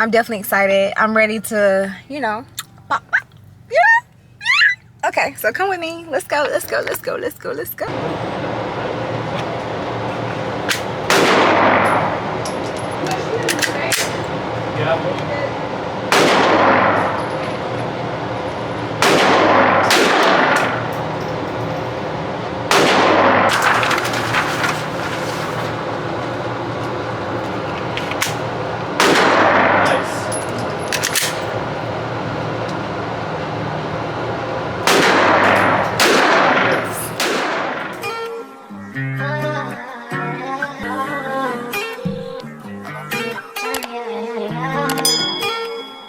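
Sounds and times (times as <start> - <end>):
gunshots with echo: 10.4 - 24.1, 28.2 - 31.8, 34.8 - 38.3.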